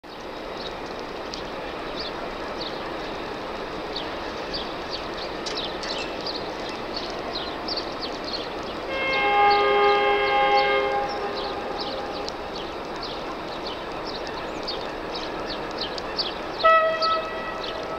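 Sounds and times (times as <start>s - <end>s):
steady rushing background: 0.1s - 17.9s
locomotive horn chord: 8.8s - 12.6s, 16.6s - 17.9s.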